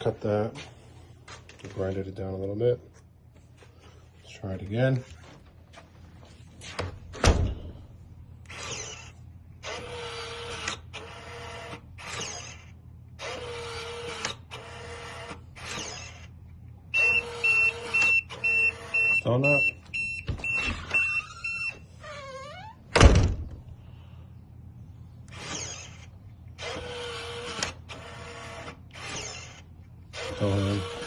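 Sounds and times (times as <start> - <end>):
lock motor whirring: 8.4 - 19.2, 19.9 - 23.6, 25.2 - 31.0
rapid high beeping: 17.0 - 21.7.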